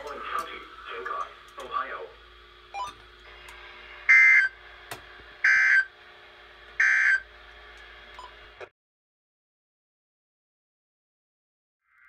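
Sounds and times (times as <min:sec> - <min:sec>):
faint radio hiss: 0:00.0 - 0:02.3
buzzy digital chirps: 0:04.1 - 0:04.6, 0:05.4 - 0:05.9, 0:06.8 - 0:07.3.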